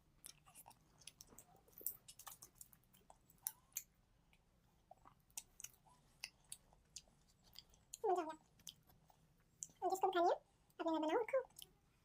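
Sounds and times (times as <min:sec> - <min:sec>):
person chewing wetly: 0:00.0 - 0:09.8.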